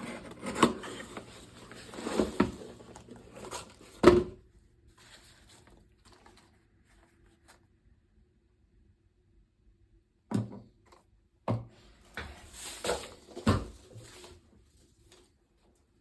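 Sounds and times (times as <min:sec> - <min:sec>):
cardboard rustling and scraping: 0:00.0 - 0:07.6, 0:12.2 - 0:14.4.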